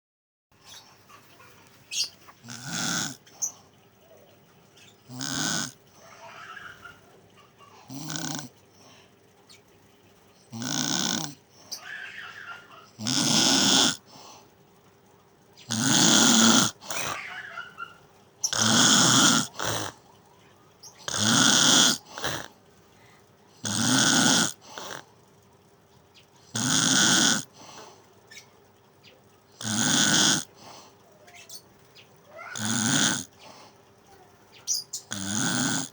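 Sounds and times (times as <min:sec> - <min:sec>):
loud rasping snores: 0:02.4 - 0:03.2, 0:05.1 - 0:05.8, 0:07.9 - 0:08.6, 0:10.5 - 0:11.4, 0:13.0 - 0:14.2, 0:15.7 - 0:17.2, 0:18.4 - 0:20.1, 0:21.0 - 0:22.6, 0:23.6 - 0:25.1, 0:26.5 - 0:27.9, 0:29.6 - 0:30.8, 0:32.4 - 0:33.5, 0:35.1 - 0:35.9
soft breath: 0:22.0 - 0:23.4.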